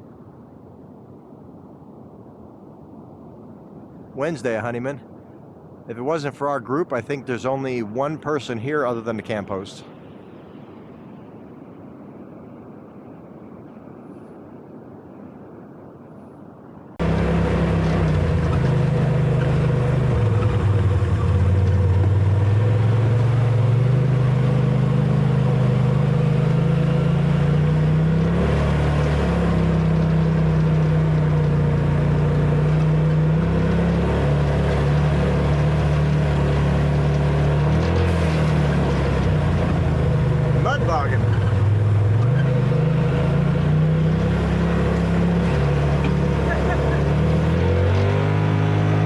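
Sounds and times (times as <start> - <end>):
vehicle engine running: 17.0 - 49.0.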